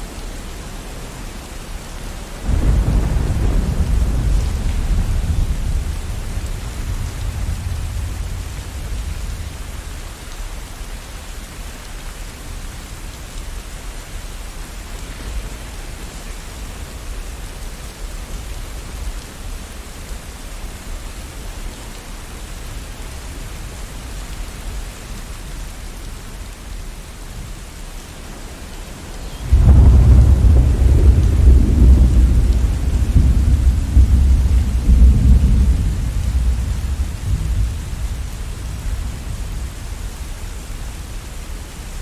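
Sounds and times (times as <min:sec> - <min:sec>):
steady rain: 0:00.0 - 0:42.0
thunder rumbling: 0:02.4 - 0:10.0, 0:29.3 - 0:40.0.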